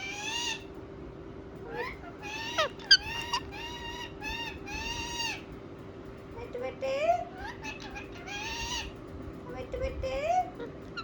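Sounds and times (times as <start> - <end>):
parakeet loud squawk: 0.0 - 0.6, 1.8 - 5.4
parakeet harsh calls: 0.0 - 0.7, 1.7 - 5.5, 7.4 - 9.0.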